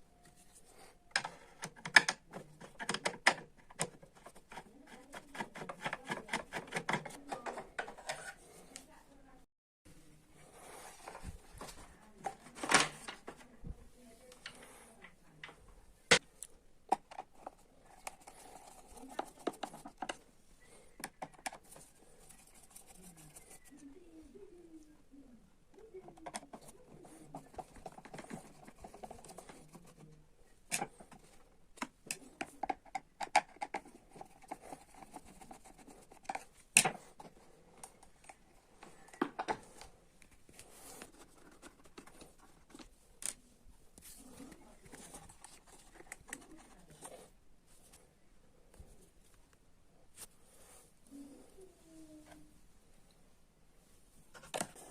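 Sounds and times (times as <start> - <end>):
clicks and knocks of parts: 1.1 - 4.6.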